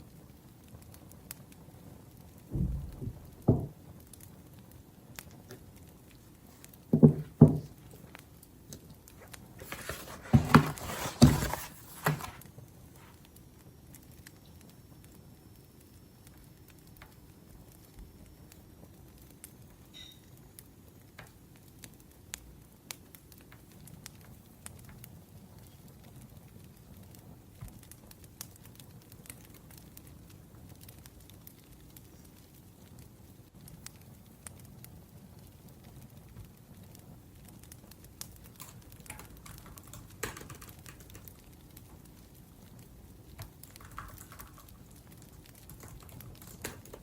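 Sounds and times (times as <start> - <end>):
wood fire crackling: 0.0 - 47.0
loud knocks: 2.5 - 3.7, 7.0 - 7.7.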